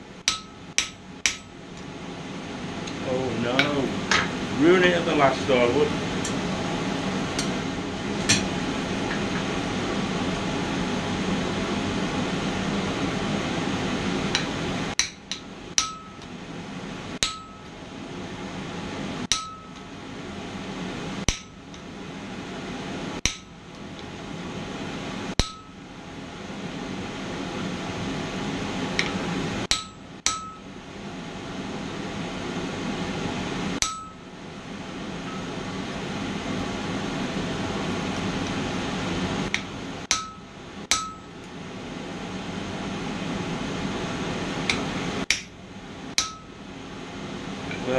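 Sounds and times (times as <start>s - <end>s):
hammer striking hot steel: 0.2s - 1.6s, 14.3s - 16.3s, 17.2s - 17.7s, 19.2s - 19.9s, 21.2s - 21.8s, 23.2s - 23.6s, 25.3s - 25.8s, 29.0s - 30.7s, 33.8s - 34.3s, 39.5s - 41.4s, 44.7s - 45.6s, 46.2s - 46.6s.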